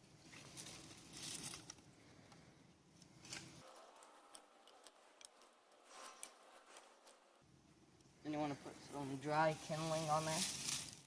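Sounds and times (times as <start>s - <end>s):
dry twigs clicking: 0.3s - 1.9s, 3.0s - 7.4s, 9.8s - 11.0s.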